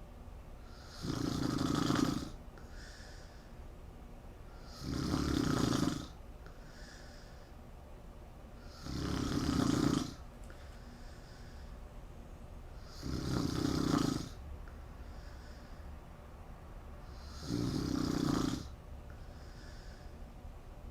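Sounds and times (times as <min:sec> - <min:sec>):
woman snoring: 0:00.7 - 0:02.9, 0:04.6 - 0:06.2, 0:08.6 - 0:10.2, 0:12.8 - 0:14.4, 0:17.0 - 0:18.8
faint breath: 0:02.6 - 0:04.8, 0:06.4 - 0:07.8, 0:10.4 - 0:12.9, 0:14.6 - 0:17.4, 0:19.1 - 0:20.5.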